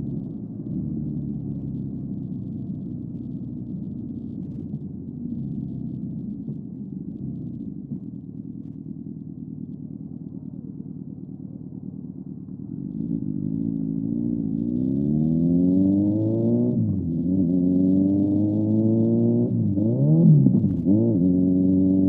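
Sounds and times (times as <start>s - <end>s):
motorcycle engine accelerating: 11.4s - 22.0s.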